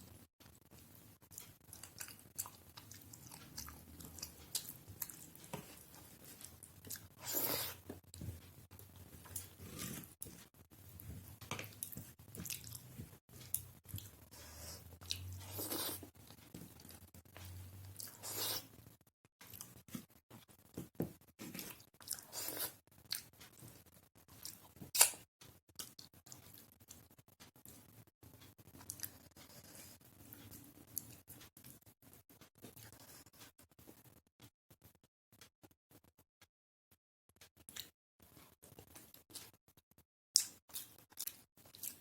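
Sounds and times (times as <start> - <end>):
person chewing food: 0.5 - 31.8, 40.4 - 42.0.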